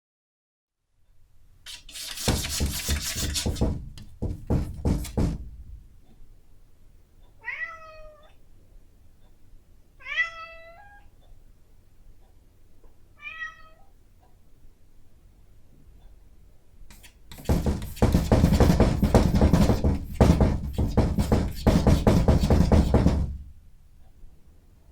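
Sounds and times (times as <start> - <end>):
cat scratching at a door: 1.7 - 5.7, 16.9 - 23.6
cat meowing: 7.4 - 8.4, 10.0 - 11.1, 13.2 - 13.9.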